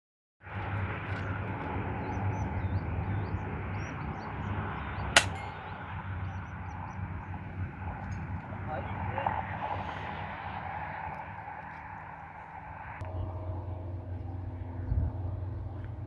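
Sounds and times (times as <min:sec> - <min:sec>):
small birds chirping: 0:02.0 - 0:08.8
sharp click: 0:05.2 - 0:05.5.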